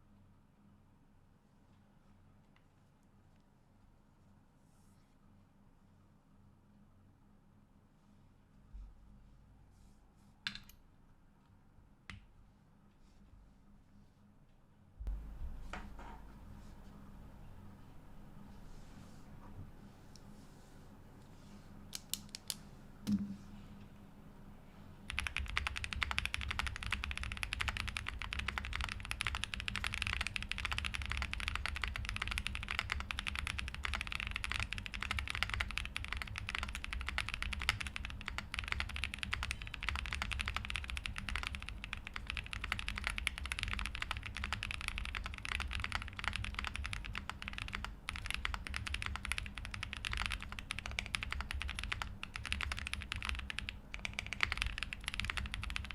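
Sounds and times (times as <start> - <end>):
mechanical keyboard typing: 25.1 - 55.9.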